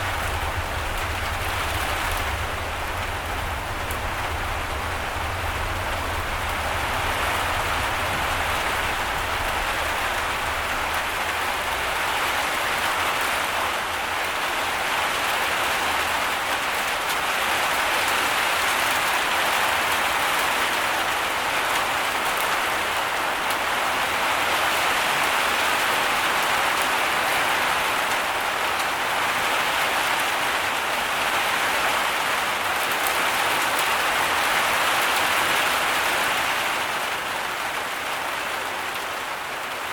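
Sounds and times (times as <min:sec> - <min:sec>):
low rumble: 0:00.0 - 0:14.5
heavy rain pouring: 0:00.0 - 0:39.9.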